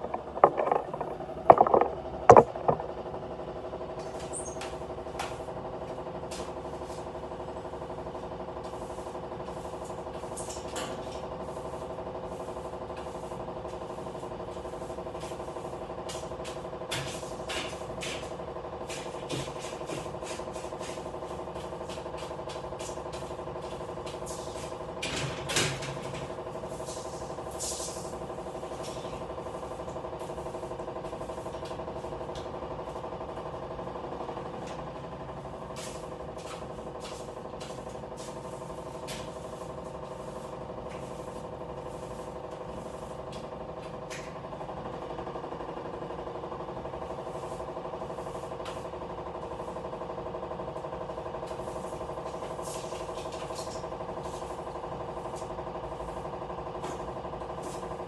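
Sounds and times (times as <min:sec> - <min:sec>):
clinks and knocks: 0:00.0 - 0:02.9
steady mechanical hum: 0:00.0 - 0:58.0.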